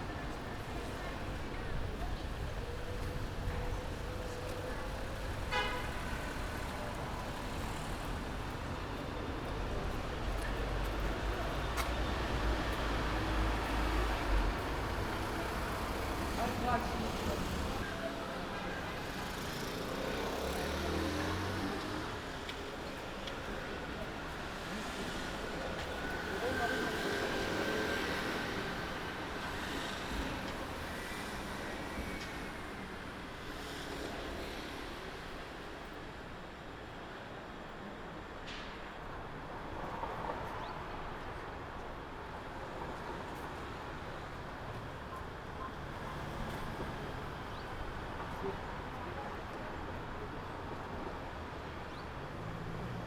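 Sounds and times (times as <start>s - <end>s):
traffic hum: 0.0s - 17.9s.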